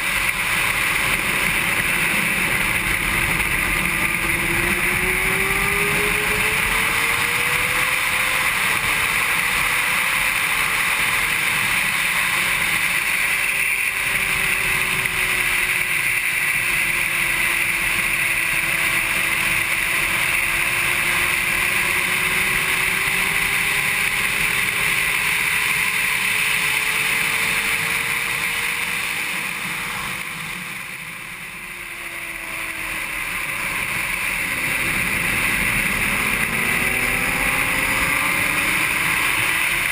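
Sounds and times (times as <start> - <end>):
motorcycle engine at high revs: 0.0 - 39.9.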